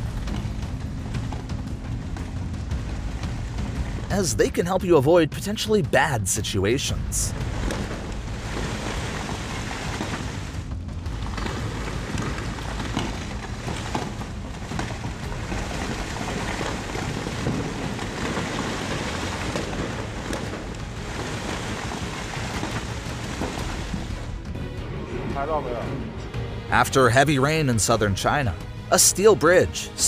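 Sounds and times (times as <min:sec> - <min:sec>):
rain falling steadily: 0:00.0 - 0:04.9, 0:06.9 - 0:24.5.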